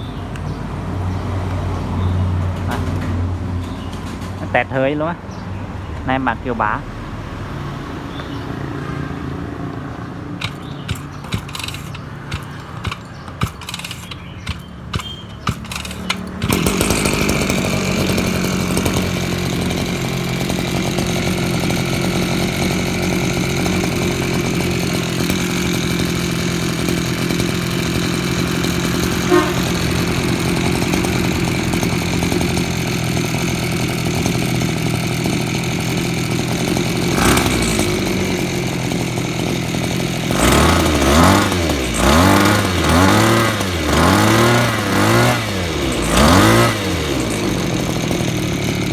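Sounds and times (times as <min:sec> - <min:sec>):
brush cutter engine running: 0:09.7 - 0:48.9
clicks and knocks: 0:10.4 - 0:16.6.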